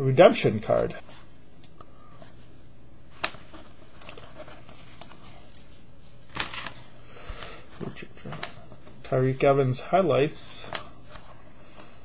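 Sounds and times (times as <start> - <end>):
steady low hum: 0.0 - 12.0
cards rustling: 3.1 - 9.4.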